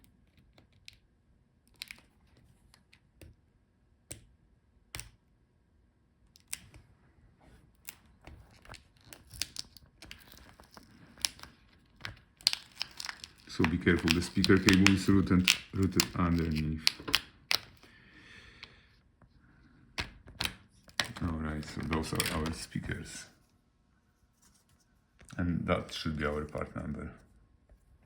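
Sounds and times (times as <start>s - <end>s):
crinkling and rustling of wires: 1.7s - 3.3s, 6.4s - 17.9s, 20.0s - 28.0s
small clicks and taps: 4.9s - 5.2s.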